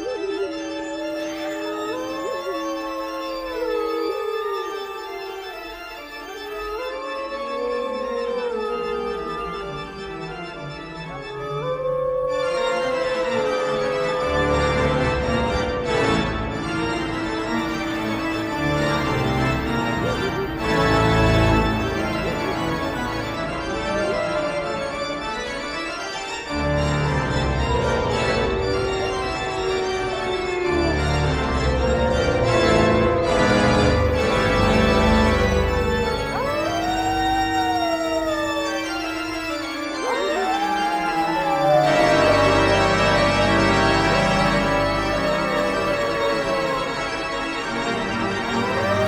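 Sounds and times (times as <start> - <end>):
organ music: 0.0 - 49.0
gliding long tones: 27.6 - 49.0.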